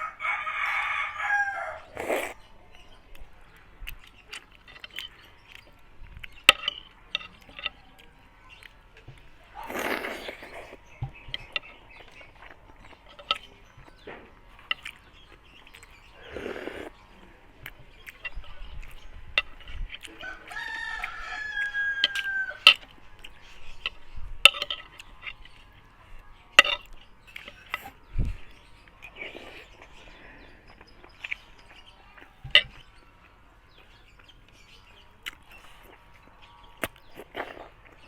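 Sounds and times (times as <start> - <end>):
rooster crowing: 0.0 - 2.0, 20.2 - 22.8
close-up chewing: 0.0 - 38.0.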